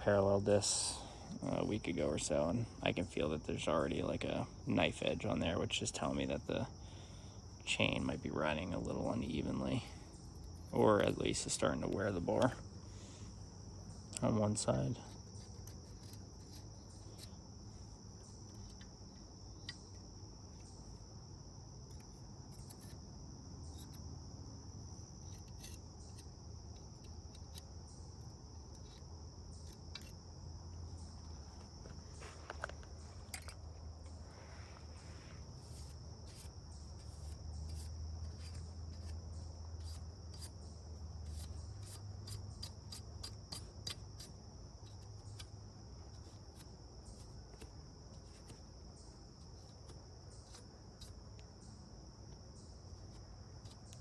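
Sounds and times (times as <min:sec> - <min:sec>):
high-pitched insect trill: 0:00.0 - 0:54.0
hand file scraping metal: 0:35.6 - 0:40.6.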